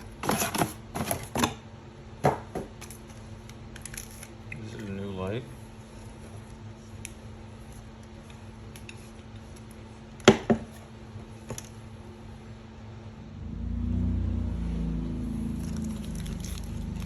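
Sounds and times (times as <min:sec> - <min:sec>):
low rumble: 0:13.2 - 0:17.0.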